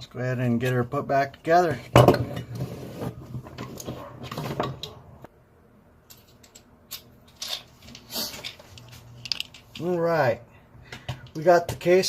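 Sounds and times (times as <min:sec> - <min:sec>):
plastic parts clicking and knocking: 0:08.5 - 0:09.9.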